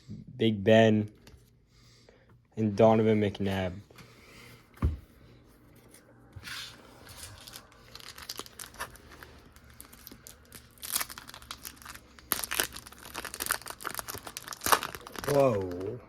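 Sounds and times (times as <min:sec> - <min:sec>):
wrapper being torn and crinkled: 0:07.0 - 0:16.0.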